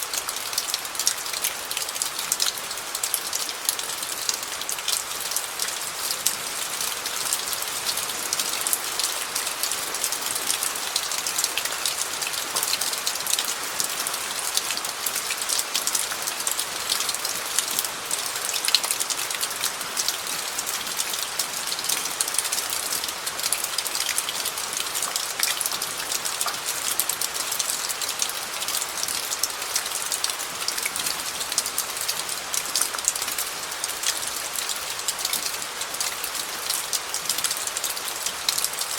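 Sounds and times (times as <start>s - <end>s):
rain on gravel: 0.0s - 38.9s.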